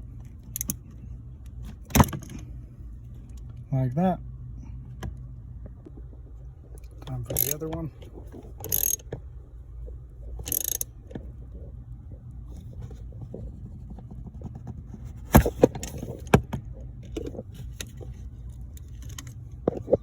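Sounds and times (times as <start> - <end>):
sharp metallic clicks: 0.4 - 0.8, 6.8 - 9.2, 10.4 - 11.2
metal tools clinking and scraping: 7.1 - 9.0.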